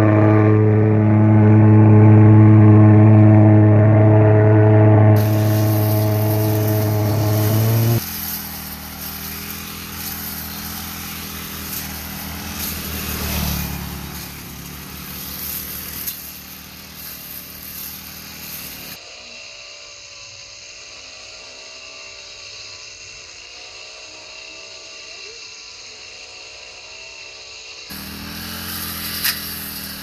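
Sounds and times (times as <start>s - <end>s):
brush cutter engine running: 5.1s - 19.1s, 20.6s - 30.0s.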